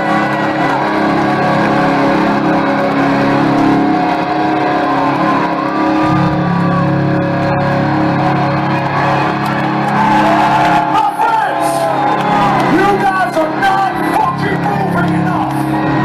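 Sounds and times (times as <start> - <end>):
bass guitar: 0.0 - 10.9
distorted electric guitar chords: 0.0 - 16.0.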